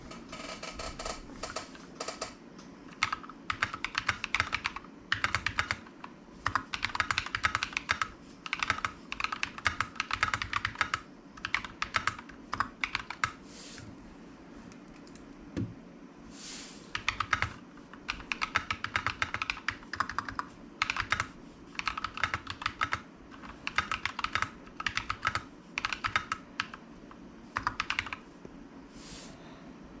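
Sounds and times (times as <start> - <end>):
mechanical keyboard typing: 0.3 - 13.4, 16.9 - 26.8, 27.5 - 28.2.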